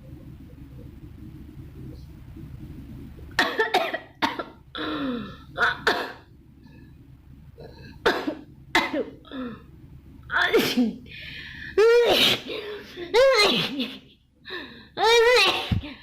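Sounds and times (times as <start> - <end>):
person coughing: 3.4 - 6.2, 10.4 - 11.0.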